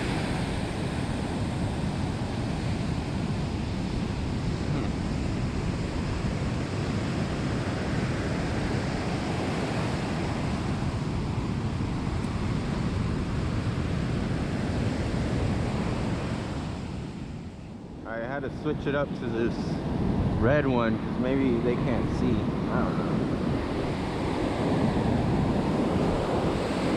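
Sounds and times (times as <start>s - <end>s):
wind rumbling on microphone: 0.0s - 26.9s
surf washing onto beach: 18.4s - 26.9s.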